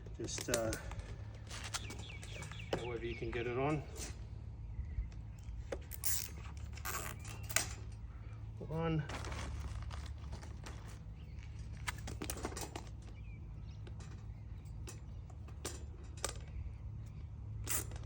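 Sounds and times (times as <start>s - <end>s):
cable tie clicking and rattling: 5.4s - 8.1s.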